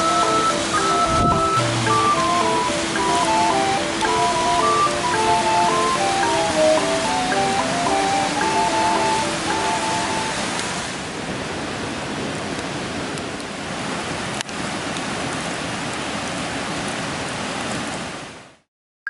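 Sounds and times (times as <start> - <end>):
background music: 0.0 - 10.5.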